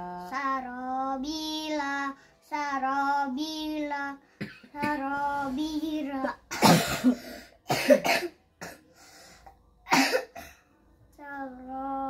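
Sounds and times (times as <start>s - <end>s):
child coughing: 4.4s - 5.2s, 6.2s - 8.8s, 9.9s - 10.6s.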